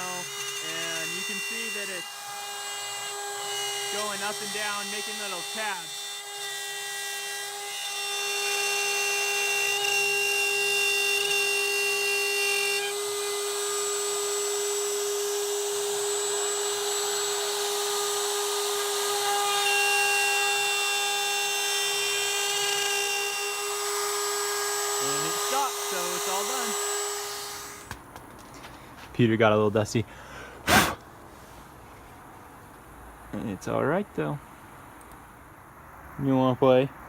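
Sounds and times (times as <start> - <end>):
router spindle cutting wood: 0.0 - 27.9.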